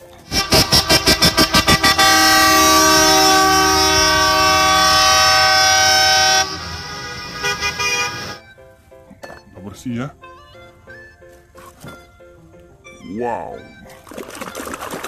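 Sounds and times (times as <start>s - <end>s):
long held horn chord: 0.3s - 8.4s
horn tooting: 0.3s - 8.5s.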